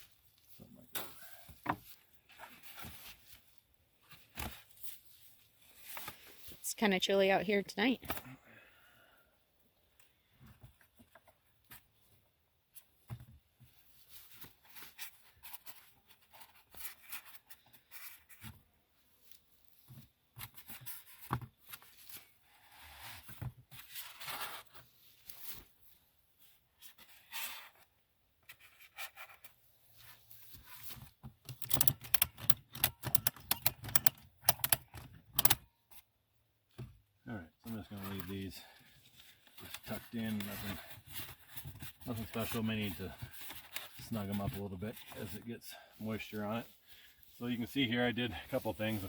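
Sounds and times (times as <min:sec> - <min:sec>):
straps scraping and rustling: 0:00.0 - 0:06.6, 0:19.2 - 0:36.0, 0:37.6 - 0:49.0
ratchet strap clicks: 0:31.5 - 0:35.6.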